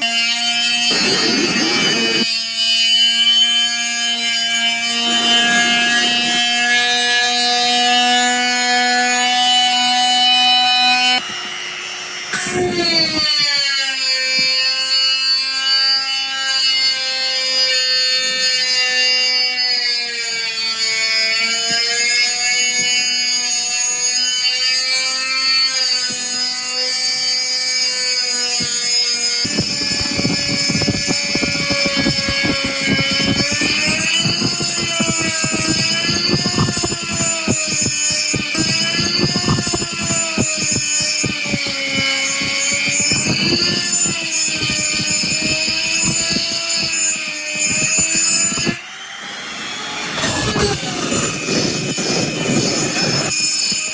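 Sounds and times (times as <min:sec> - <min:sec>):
mini grinder motor whining: 0:00.0 - 0:15.1, 0:17.0 - 0:53.9
harsh grating rattle: 0:00.8 - 0:02.3.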